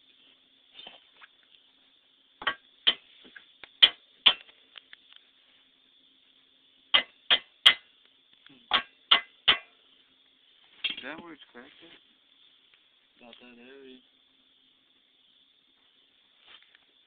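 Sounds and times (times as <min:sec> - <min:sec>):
sharp knocks on hard object: 0:02.4 - 0:03.0, 0:03.8 - 0:04.4, 0:06.9 - 0:07.9, 0:08.7 - 0:09.7.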